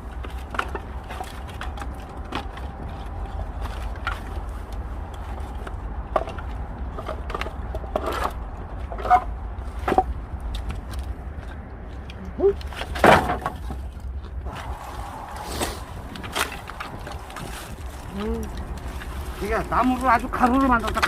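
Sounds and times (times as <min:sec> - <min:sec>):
steady low rumble: 0:00.0 - 0:21.0
wooden pallet pieces knocking: 0:08.9 - 0:10.1, 0:12.8 - 0:13.8.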